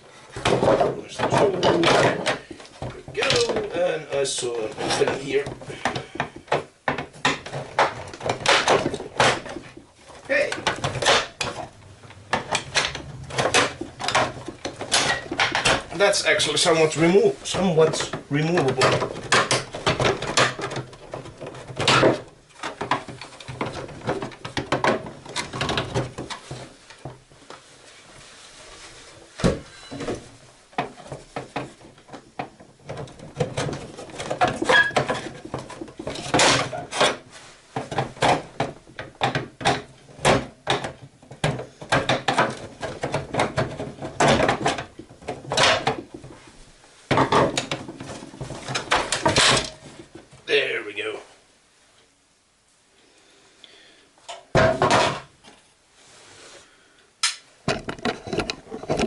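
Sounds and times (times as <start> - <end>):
plastic casing clicks and knocks: 4.9 - 16.0, 37.8 - 46.2.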